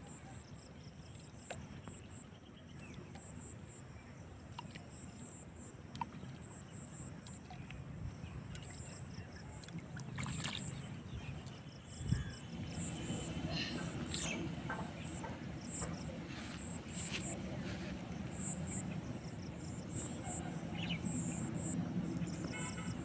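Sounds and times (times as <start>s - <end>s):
insects chirping: 3.2s - 23.0s
water sloshing: 7.2s - 23.0s.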